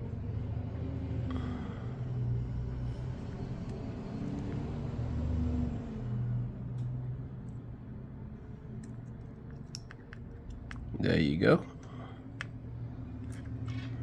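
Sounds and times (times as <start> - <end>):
light clicks of tools: 6.7 - 7.7, 8.4 - 11.0.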